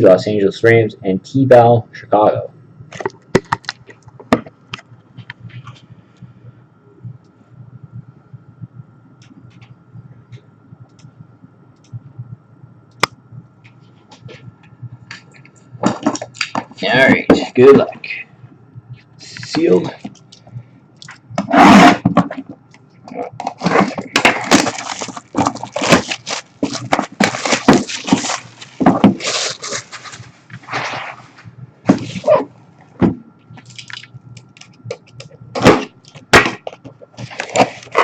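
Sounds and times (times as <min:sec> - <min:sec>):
packaging crinkling and ripping: 0:23.5 - 0:30.2, 0:36.1 - 0:38.0.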